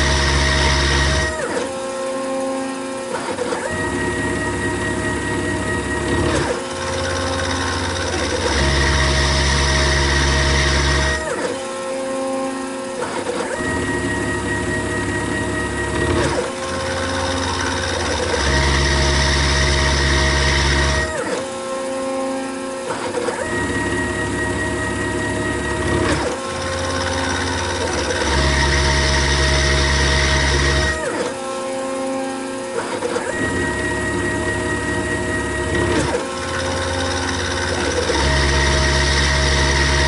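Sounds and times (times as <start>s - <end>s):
milling machine motor whine: 0.0s - 40.0s.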